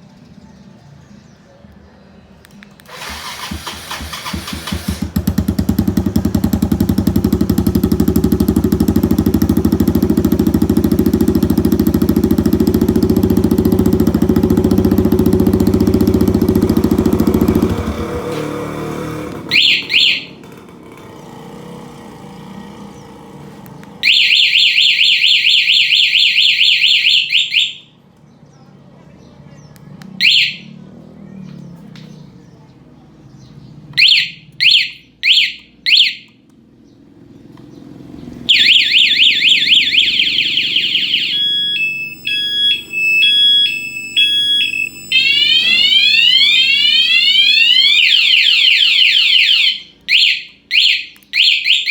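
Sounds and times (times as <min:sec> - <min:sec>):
motorcycle engine running: 0:03.0 - 0:25.6, 0:36.8 - 0:49.6
alarm chirps: 0:08.0 - 0:18.4, 0:19.4 - 0:20.5, 0:24.0 - 0:27.9, 0:30.2 - 0:30.7, 0:34.0 - 0:36.3, 0:38.5 - 0:51.9
fast-warbling alarm siren: 0:19.4 - 0:20.4, 0:24.0 - 0:27.9, 0:30.2 - 0:30.7, 0:38.5 - 0:51.9.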